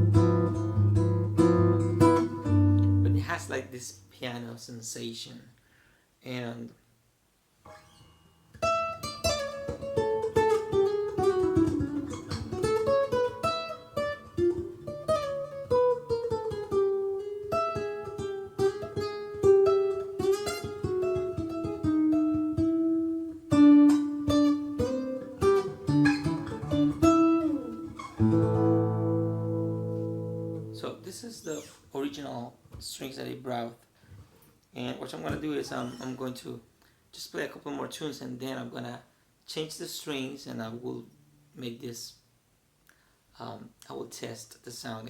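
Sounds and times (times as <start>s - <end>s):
fingerstyle acoustic guitar: 0.0s - 3.3s, 7.6s - 31.8s.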